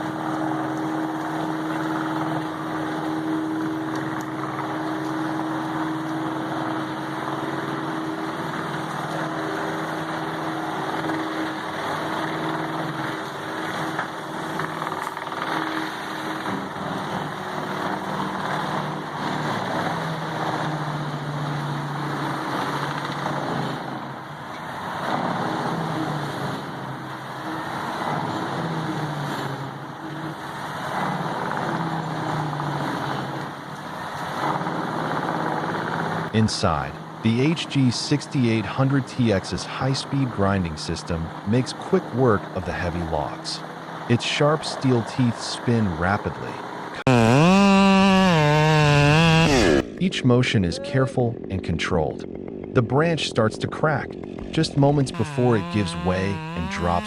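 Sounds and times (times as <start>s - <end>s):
diesel engine droning: 0.0s - 57.0s
grinding and crunching of wood: 47.0s - 49.9s.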